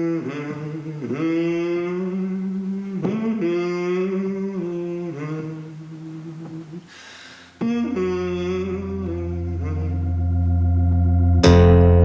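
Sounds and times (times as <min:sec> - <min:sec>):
person humming: 0:00.0 - 0:10.6
person breathing: 0:06.8 - 0:07.6.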